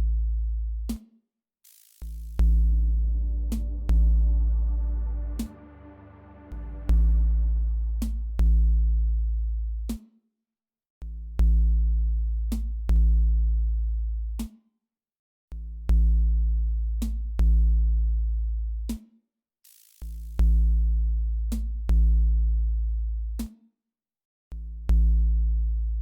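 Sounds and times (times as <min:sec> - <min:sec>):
electronic synth bass music: 0:02.5 - 0:08.9.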